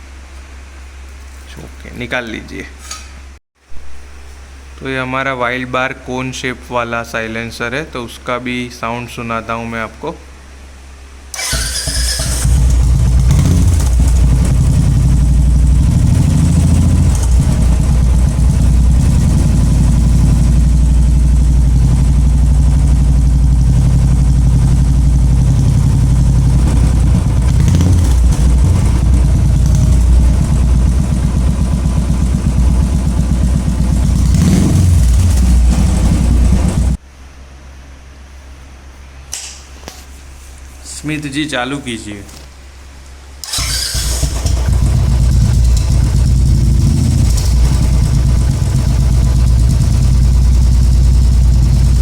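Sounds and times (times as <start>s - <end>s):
motorcycle engine idling and revving: 11.4s - 37.0s, 43.5s - 52.0s.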